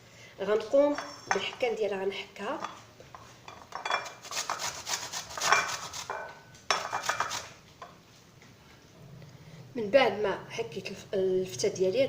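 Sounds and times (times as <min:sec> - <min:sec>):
turnip rasping on a grater: 0:04.2 - 0:06.1.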